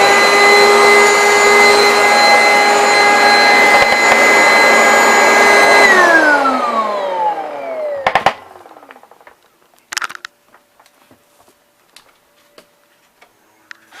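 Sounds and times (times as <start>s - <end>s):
vacuum motor winding down: 0.0s - 9.3s.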